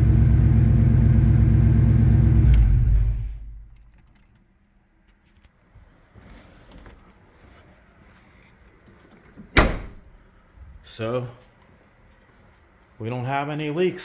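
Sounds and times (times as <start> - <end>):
light metallic jingle: 3.7 - 4.8.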